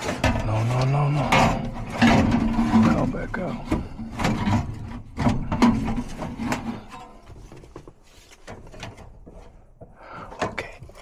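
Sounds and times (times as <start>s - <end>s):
metal knocks and scrapes: 0.0s - 9.7s.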